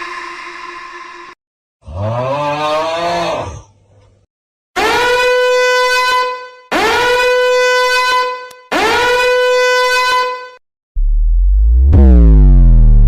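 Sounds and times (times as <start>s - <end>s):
horn blasts: 4.8s - 10.6s.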